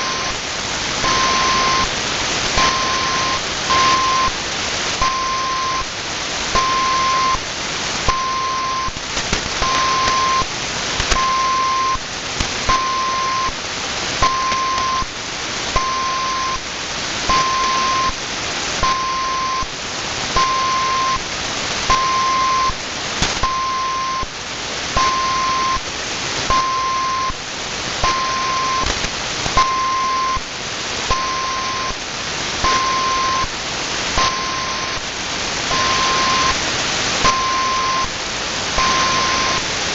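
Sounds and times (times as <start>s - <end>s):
steady radio beep: 0.0s - 0.4s, 1.0s - 1.9s, 2.6s - 4.4s, 5.0s - 5.9s, 6.5s - 7.4s, 8.0s - 9.0s, 9.6s - 10.5s, 11.1s - 12.0s, 12.7s - 13.6s, 14.2s - 15.1s, 15.8s - 16.6s, 17.3s - 18.2s, 18.8s - 19.7s, 20.4s - 21.2s, 21.9s - 22.8s, 23.4s - 24.3s, 25.0s - 25.8s, 26.5s - 27.4s, 28.0s - 28.9s, 29.6s - 30.4s, 31.1s - 32.0s, 32.6s - 33.5s, 34.2s - 35.0s, 35.7s - 36.6s, 37.2s - 38.1s, 38.8s - 39.7s
shortwave static hiss: 0.0s - 39.9s.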